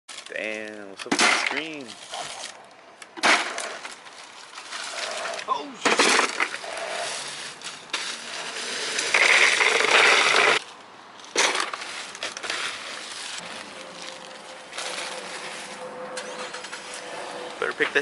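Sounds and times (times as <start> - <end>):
ice cubes clattering and crunching: 3.9 - 10.6.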